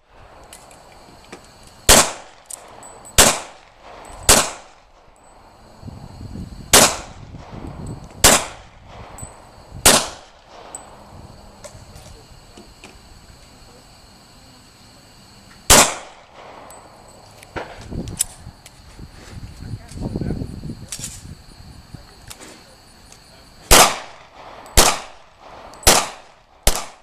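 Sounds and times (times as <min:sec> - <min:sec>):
pistol shots: 0:01.9 - 0:05.0, 0:06.7 - 0:07.5, 0:08.2 - 0:09.2, 0:09.8 - 0:10.9, 0:15.7 - 0:16.7, 0:23.7 - 0:27.0.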